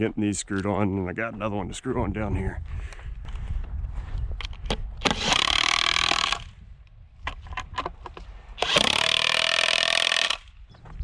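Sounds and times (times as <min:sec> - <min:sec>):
power screwdriver driving screws: 0:05.0 - 0:06.5, 0:08.6 - 0:10.5.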